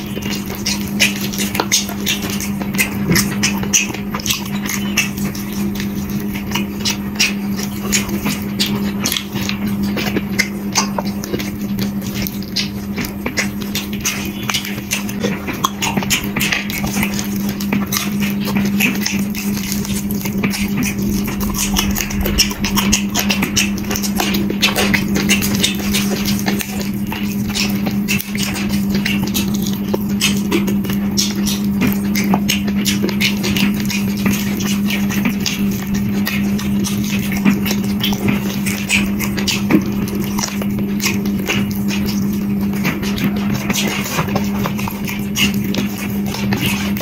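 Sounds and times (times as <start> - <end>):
wet chewing and lip smacks: 0.0 - 47.0
steady low hum: 16.7 - 31.7.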